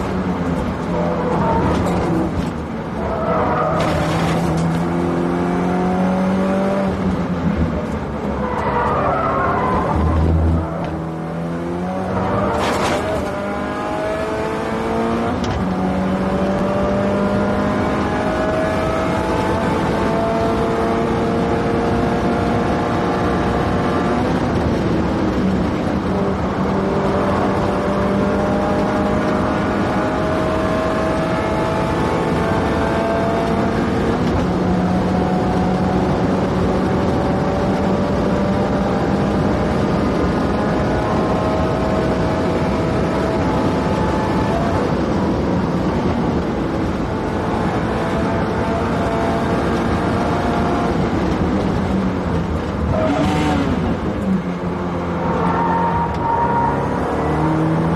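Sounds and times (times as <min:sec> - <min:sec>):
car engine revving at full throttle: 0:00.0 - 0:57.9.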